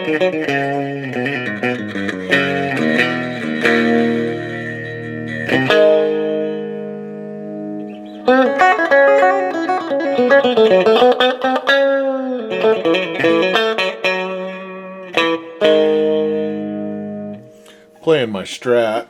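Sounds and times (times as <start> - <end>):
electric guitar chord ringing: 0.0 - 18.0
picked electric guitar notes: 0.0 - 18.0.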